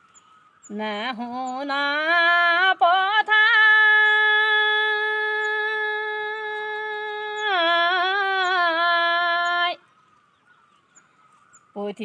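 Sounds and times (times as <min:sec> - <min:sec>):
woman singing unaccompanied: 0:00.7 - 0:10.0, 0:11.8 - 0:12.0.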